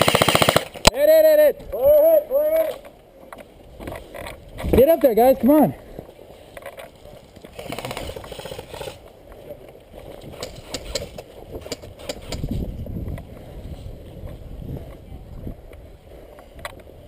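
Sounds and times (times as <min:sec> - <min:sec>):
airsoft gun bursts: 0:00.0 - 0:00.9
wind noise on microphone: 0:03.7 - 0:04.9, 0:09.9 - 0:17.0.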